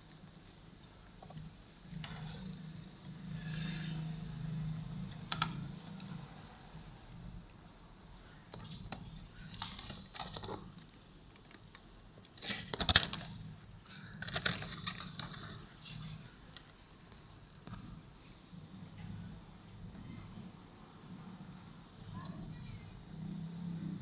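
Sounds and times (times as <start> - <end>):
scraping and crackling handling: 8.5 - 18.0.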